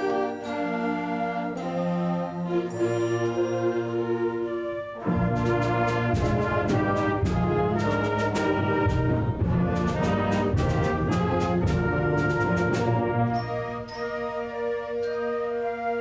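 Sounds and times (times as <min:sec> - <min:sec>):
concert band playing brass chords: 0:05.0 - 0:13.9
percussion strikes: 0:05.0 - 0:15.4.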